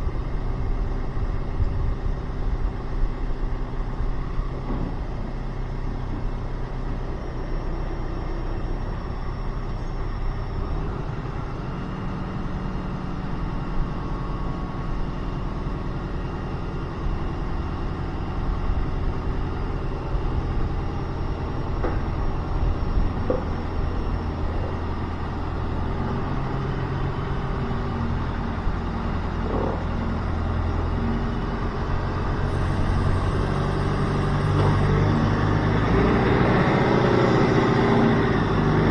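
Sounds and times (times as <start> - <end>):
vehicle engine running: 0.0 - 38.9.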